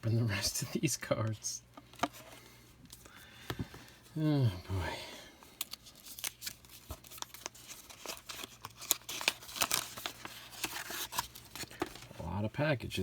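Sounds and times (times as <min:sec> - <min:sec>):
plastic wrap and cardboard tearing: 0:05.6 - 0:12.2.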